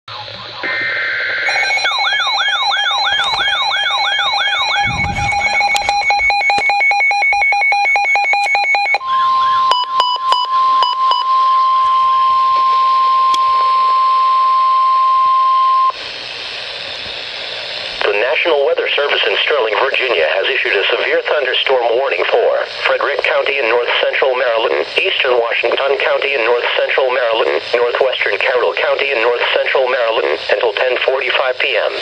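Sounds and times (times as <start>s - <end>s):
data burst tones: 0.1s - 16.0s
warbling siren alarm: 0.1s - 16.0s
steady warning alert tone: 0.4s - 12.2s
rapid beeping: 1.4s - 11.2s.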